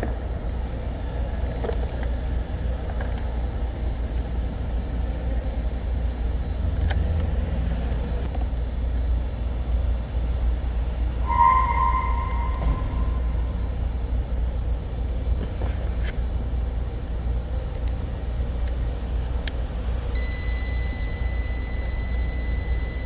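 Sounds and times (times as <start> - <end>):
low rumble: 11.1 - 15.0.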